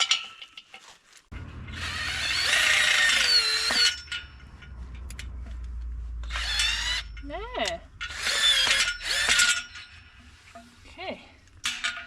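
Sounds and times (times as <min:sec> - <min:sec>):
power drill driving a screw: 0:01.7 - 0:04.1, 0:06.2 - 0:07.1, 0:08.0 - 0:09.8.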